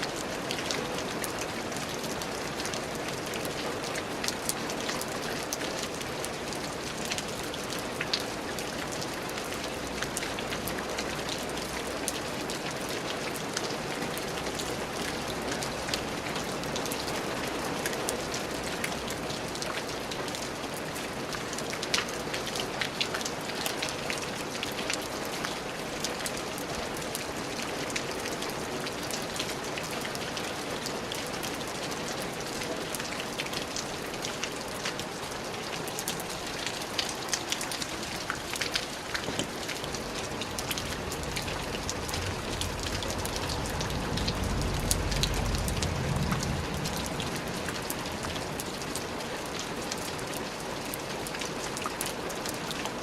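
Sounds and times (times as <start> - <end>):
steady rain falling: 0.0 - 53.0
low rumble: 40.3 - 47.9.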